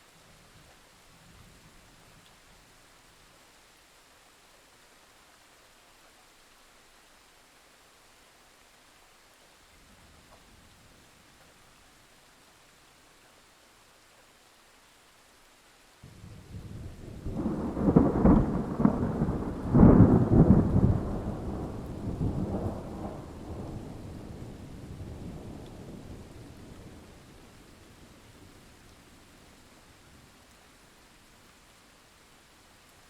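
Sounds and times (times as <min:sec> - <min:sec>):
faint steady rain: 0:00.0 - 0:33.0
thunder rumbling: 0:16.1 - 0:27.6.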